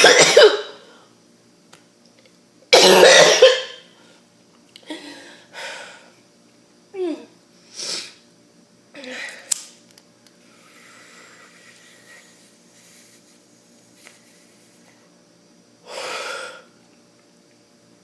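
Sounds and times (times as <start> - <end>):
harsh choking cough: 0.0 - 0.8, 2.7 - 3.8.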